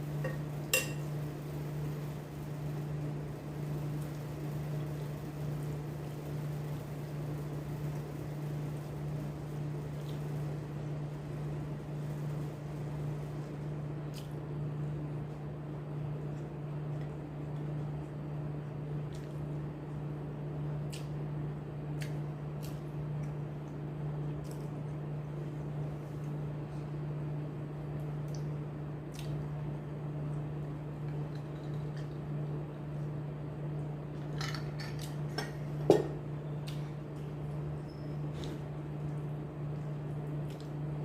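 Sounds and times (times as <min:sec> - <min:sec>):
steady low hum: 0:00.0 - 0:41.0
cutlery clicking on plate: 0:00.7 - 0:01.0.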